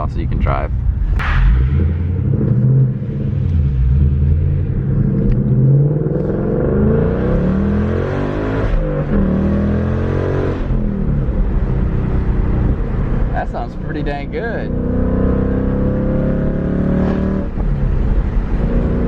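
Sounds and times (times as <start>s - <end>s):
car engine accelerating: 0.4s - 19.0s.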